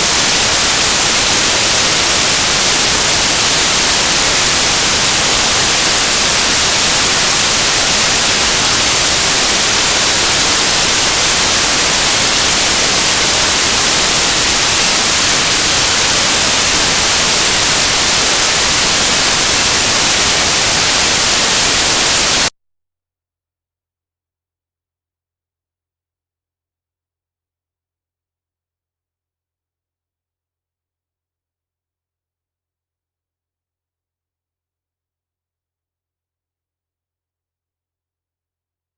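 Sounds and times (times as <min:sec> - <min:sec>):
loud steady hiss: 0:00.0 - 0:22.5.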